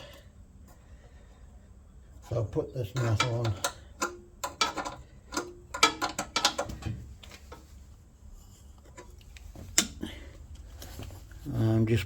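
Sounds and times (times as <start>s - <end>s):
metallic clicks and taps: 3.0s - 7.4s.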